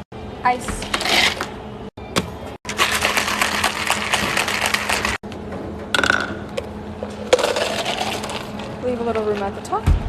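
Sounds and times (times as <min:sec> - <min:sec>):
ice cubes clattering: 0:02.7 - 0:05.2, 0:07.3 - 0:08.7.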